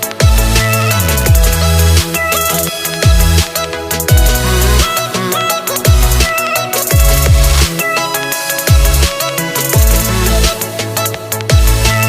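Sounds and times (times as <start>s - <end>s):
fast hi-hat pattern: 0.0s - 12.0s
sliding deep bass notes: 0.2s - 5.0s, 5.9s - 6.3s, 7.0s - 7.7s, 9.8s - 10.6s, 11.5s - 12.0s.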